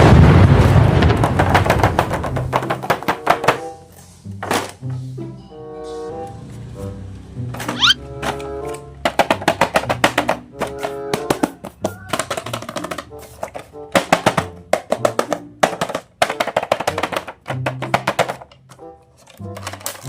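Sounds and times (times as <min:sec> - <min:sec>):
background music: 0:02.5 - 0:20.0
rapid sharp clicks and taps: 0:14.0 - 0:18.4.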